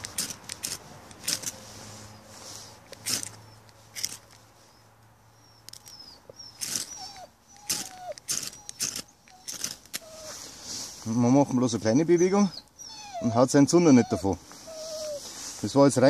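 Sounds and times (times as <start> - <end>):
ferro rod scraping: 0.0 - 4.4.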